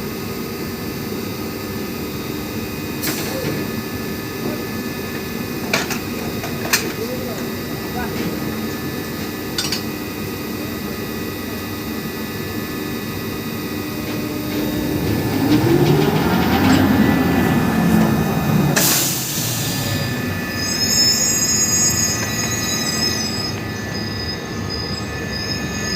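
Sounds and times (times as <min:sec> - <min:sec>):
drilling machinery din: 0:13.4 - 0:22.7.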